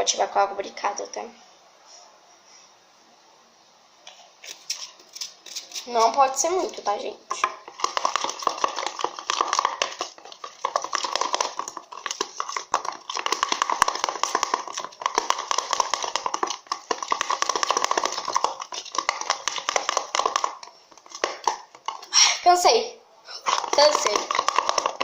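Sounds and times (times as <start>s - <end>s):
utensil scraping container: 4.4s - 22.6s, 23.4s - 25.0s.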